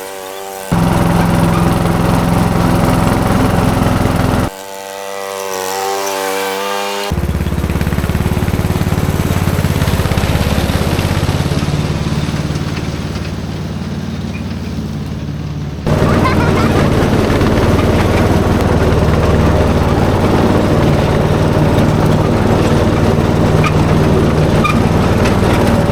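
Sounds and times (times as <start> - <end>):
steady whine: 0.7 - 4.5
lawn mower engine running: 0.7 - 4.6, 6.7 - 25.9.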